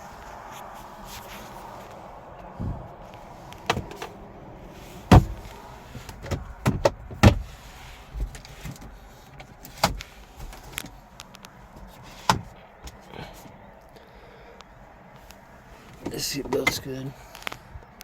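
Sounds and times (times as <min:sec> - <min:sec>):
car door fittings clicking: 0:05.1 - 0:07.4.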